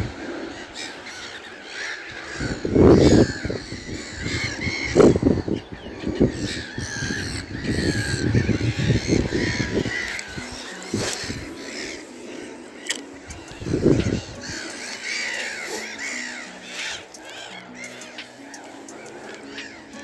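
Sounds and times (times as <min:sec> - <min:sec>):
crows cawing: 0:00.0 - 0:20.0
songbirds chirping: 0:00.0 - 0:20.0.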